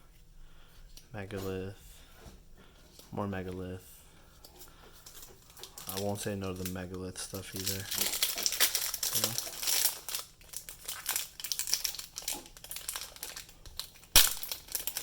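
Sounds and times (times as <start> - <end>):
foil wrapper crinkling: 4.6 - 15.0.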